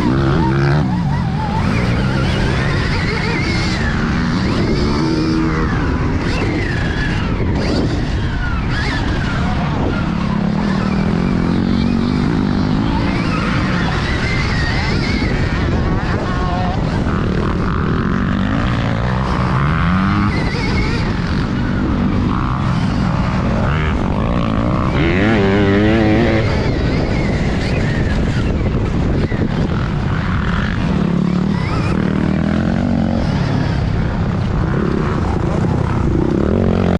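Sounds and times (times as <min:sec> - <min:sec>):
warbling whine: 0:00.0 - 0:36.9.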